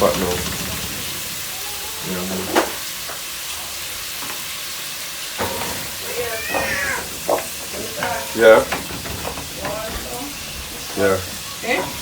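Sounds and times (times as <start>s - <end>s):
food sizzling in a pot: 0.0s - 12.0s
cat meowing: 1.4s - 2.6s, 6.0s - 7.3s.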